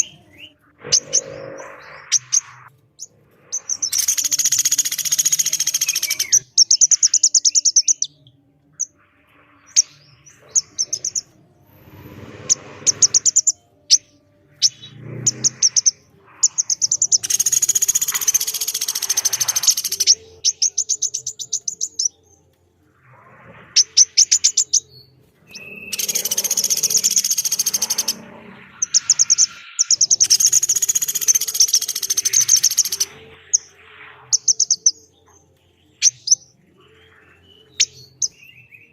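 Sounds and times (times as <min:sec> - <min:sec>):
harsh bird calls: 0:00.0 - 0:38.9
bird rattling trills: 0:00.8 - 0:07.5, 0:14.6 - 0:22.1, 0:25.5 - 0:33.7.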